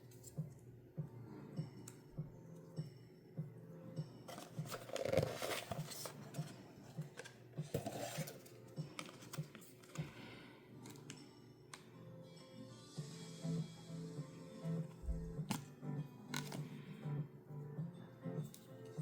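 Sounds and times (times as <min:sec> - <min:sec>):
packaging rustling: 0:04.3 - 0:10.0.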